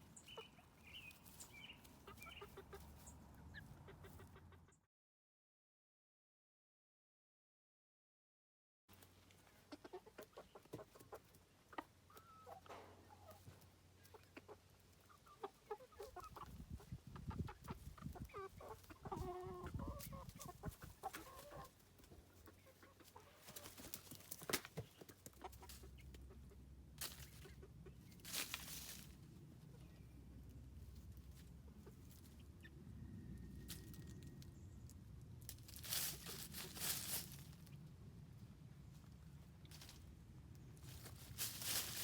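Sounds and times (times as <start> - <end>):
chickens clucking softly: 0.0 - 4.9, 8.9 - 42.0.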